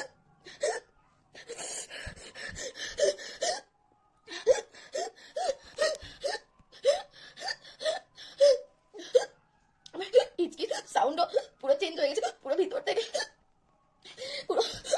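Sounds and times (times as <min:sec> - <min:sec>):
woman speaking: 0:09.9 - 0:13.2
woman gasping breaths: 0:14.1 - 0:14.9.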